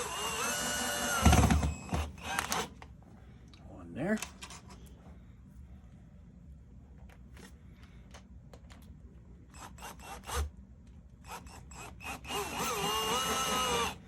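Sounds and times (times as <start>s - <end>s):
power drill whirring: 0.0s - 2.8s, 9.5s - 10.5s, 11.2s - 14.0s.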